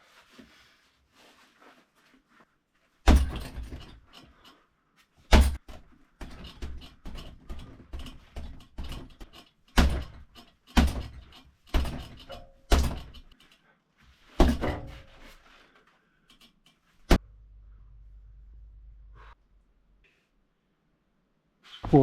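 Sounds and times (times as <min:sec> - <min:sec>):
low steady hum: 0:17.2 - 0:20.0.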